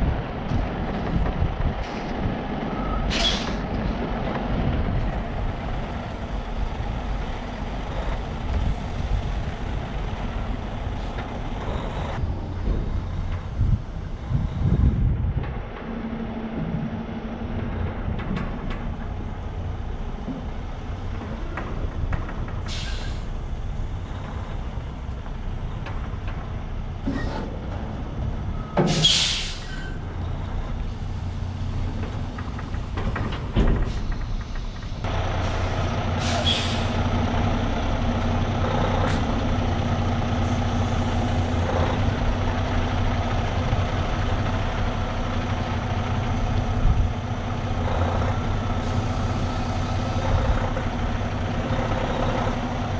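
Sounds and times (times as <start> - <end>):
diesel truck engine running: 0.0 - 52.9
air brake hisses: 3.1 - 3.6, 22.7 - 23.3, 28.8 - 30.0, 35.4 - 37.0.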